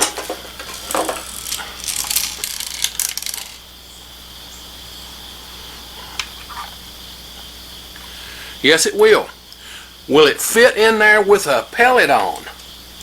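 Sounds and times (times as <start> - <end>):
metallic clicks and scrapes of wire: 0.0 - 3.6.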